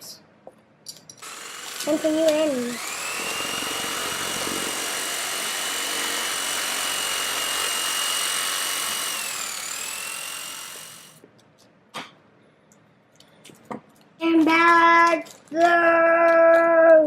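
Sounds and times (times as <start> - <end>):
small electric motor whining: 1.2 - 11.2.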